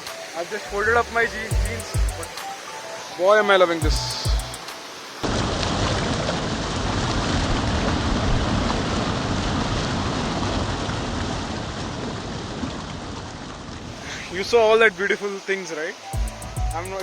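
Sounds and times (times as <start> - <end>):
stream water roaring: 0.0 - 17.0.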